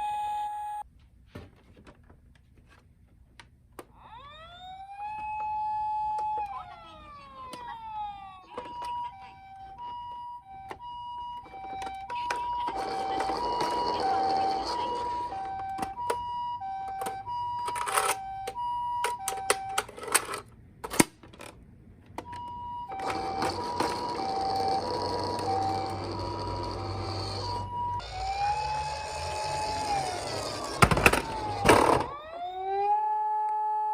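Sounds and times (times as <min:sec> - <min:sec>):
toy electronic two-tone siren: 0:00.0 - 0:00.8, 0:04.0 - 0:20.2, 0:22.3 - 0:33.9
toys clicking and knocking: 0:11.4 - 0:16.2, 0:16.8 - 0:32.3
sliding electronic tone: 0:23.0 - 0:33.0.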